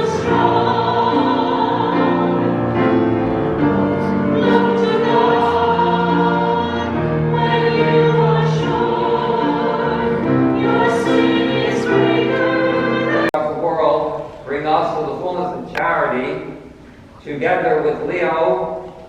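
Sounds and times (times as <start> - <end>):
choir singing a hymn: 0.0 - 13.4.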